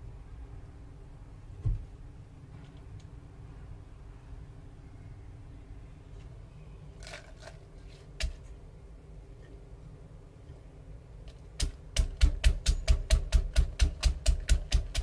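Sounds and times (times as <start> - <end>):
low steady hum: 0.0 - 15.0
rapid knocking of food preparation: 11.6 - 15.0.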